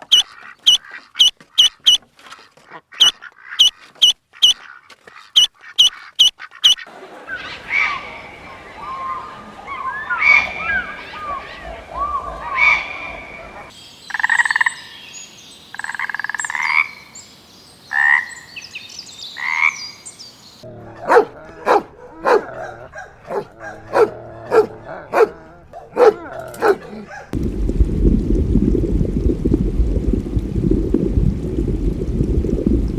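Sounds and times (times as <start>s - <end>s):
short chirping animal calls: 0.0s - 2.0s, 2.9s - 6.8s
drawn-out animal calls: 0.0s - 6.9s, 20.6s - 27.4s.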